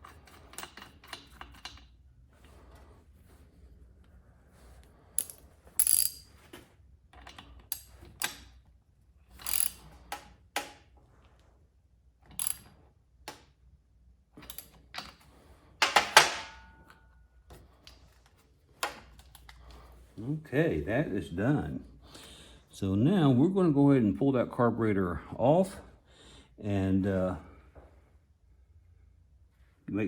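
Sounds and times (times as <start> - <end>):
metallic rattles of hand tools: 0.0 - 1.9, 5.2 - 6.4, 9.3 - 10.2.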